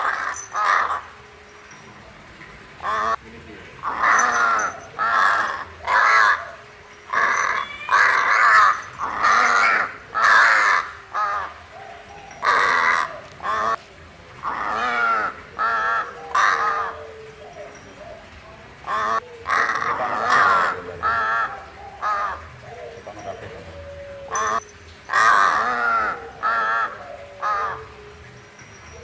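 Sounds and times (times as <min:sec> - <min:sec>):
crow cawing: 0:03.8 - 0:06.4, 0:07.1 - 0:11.6, 0:12.4 - 0:13.8, 0:14.4 - 0:17.0, 0:18.9 - 0:22.5, 0:24.2 - 0:27.8.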